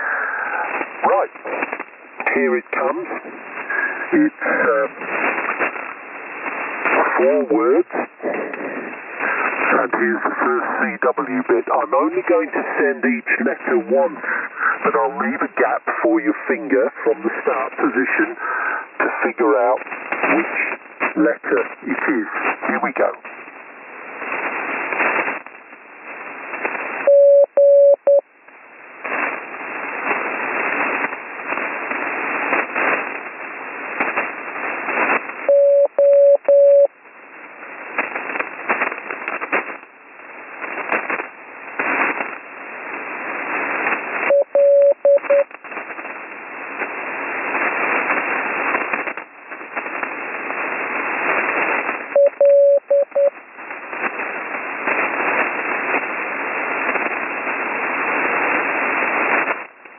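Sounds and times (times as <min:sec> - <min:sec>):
radio static and band noise: 0:00.0 - 0:59.9
morse code tone: 0:27.1 - 0:28.2, 0:35.5 - 0:36.9, 0:44.3 - 0:45.5, 0:52.2 - 0:53.3.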